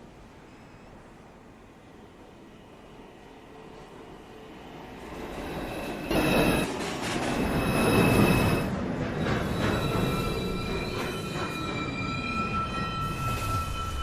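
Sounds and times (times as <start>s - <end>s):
subway train running: 0.0s - 14.0s
steel wheels squealing on rails: 4.8s - 14.0s.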